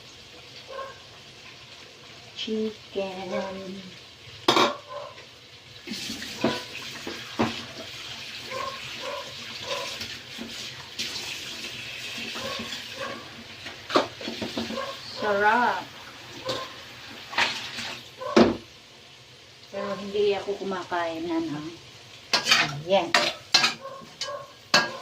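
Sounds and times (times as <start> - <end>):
chicken sizzling in a pan: 0.0 - 25.0
metal utensil knocking on pan: 4.5 - 4.9, 22.4 - 25.0.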